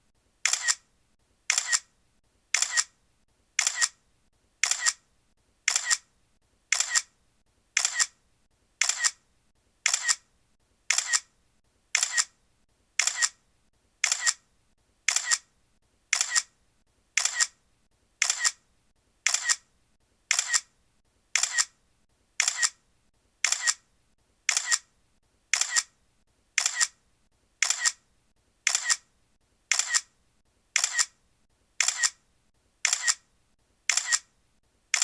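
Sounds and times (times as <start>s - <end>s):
camera shutter double click: 0.4s - 0.8s, 1.5s - 1.9s, 2.6s - 2.9s, 3.6s - 4.0s, 4.6s - 5.0s, 5.7s - 6.1s, 6.7s - 7.1s, 7.8s - 8.2s, 8.8s - 9.2s, 9.9s - 10.2s, 10.9s - 11.3s, 12.0s - 12.3s, 13.0s - 13.4s, 14.0s - 14.4s, 15.1s - 15.4s, 16.1s - 16.5s, 17.2s - 17.6s, 18.2s - 18.6s, 19.3s - 19.6s, 20.3s - 20.7s, 21.4s - 21.7s, 22.4s - 22.8s, 23.4s - 23.8s, 24.5s - 24.9s, 25.5s - 25.9s, 26.6s - 27.0s, 27.6s - 28.0s, 28.7s - 29.1s, 29.7s - 30.1s, 30.8s - 31.2s, 31.8s - 32.2s, 32.8s - 33.2s, 33.9s - 34.3s.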